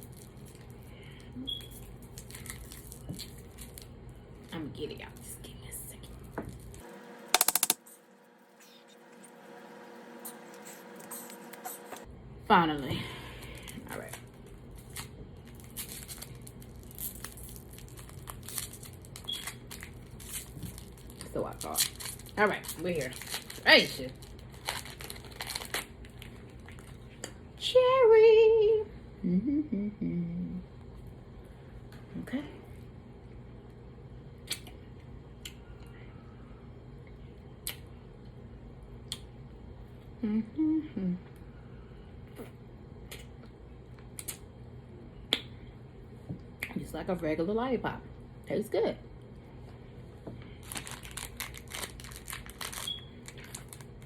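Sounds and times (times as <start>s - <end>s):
low room hum: 0.0s - 54.0s
plastic wrapper crinkling and tearing: 2.0s - 3.9s, 13.5s - 27.0s, 50.6s - 54.0s
wet mouth clicks sucking lollipop: 34.4s - 34.8s.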